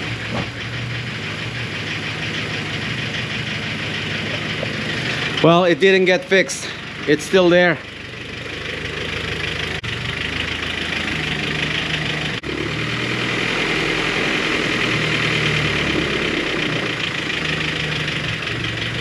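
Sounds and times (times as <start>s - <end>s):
engine idling with valve ticking: 0.0s - 19.0s.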